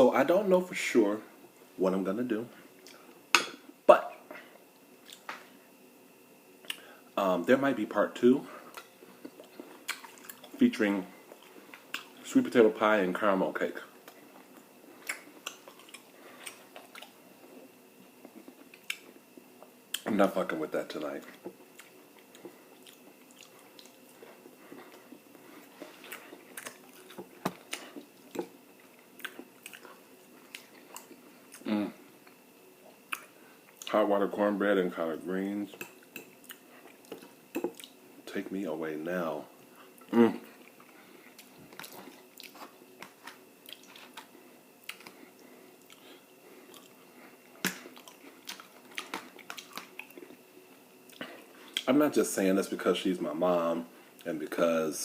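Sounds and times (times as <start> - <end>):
person chewing food: 8.7 - 10.6, 11.2 - 12.2, 14.0 - 20.1, 21.2 - 33.9, 35.7 - 38.0, 39.6 - 51.9
wet mouth smacks: 47.6 - 50.2.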